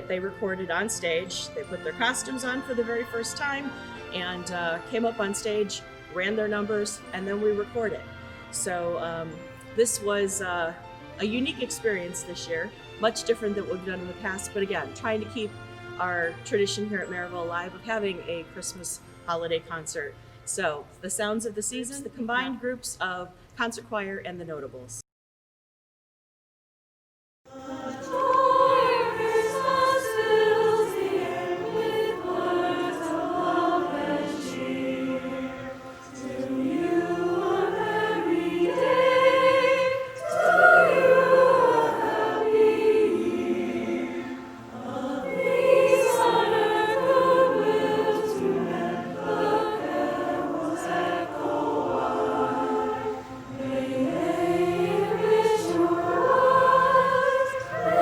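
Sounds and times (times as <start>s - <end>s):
choir singing in parts: 27.5s - 58.0s.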